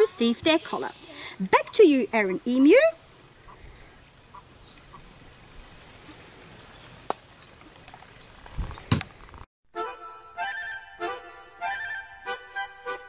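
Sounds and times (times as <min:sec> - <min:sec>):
low background hiss: 0:00.0 - 0:08.5.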